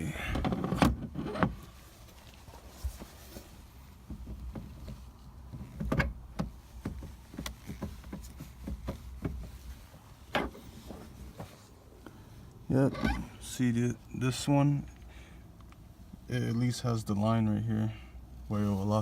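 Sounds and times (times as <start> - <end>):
low steady hum: 0.0 - 19.0
clicks and knocks of steering wheel: 4.0 - 11.6.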